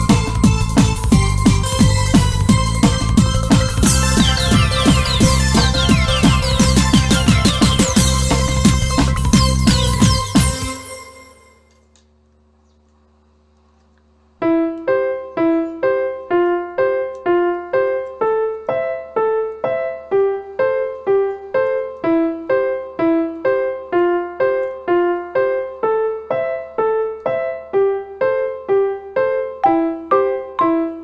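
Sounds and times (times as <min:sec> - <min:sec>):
piano single notes: 0:14.4 - 0:31.0.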